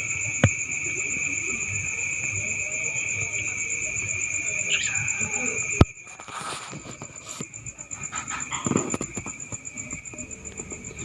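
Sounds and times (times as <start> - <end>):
crickets chirping: 0.0 - 11.0
faint rustling: 5.0 - 11.0.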